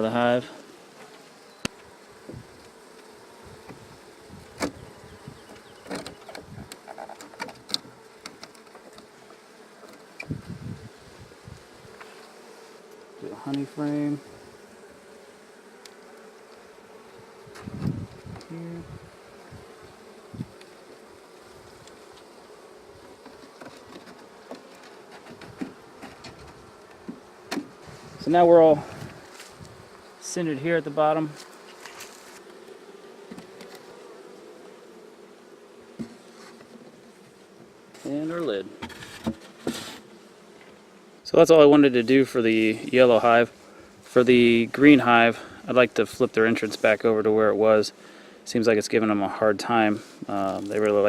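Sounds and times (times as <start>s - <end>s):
bees buzzing: 0.0s - 51.0s
clicks and knocks from hive: 0.6s - 10.6s, 11.6s - 13.6s, 14.5s - 27.9s, 31.3s - 40.8s.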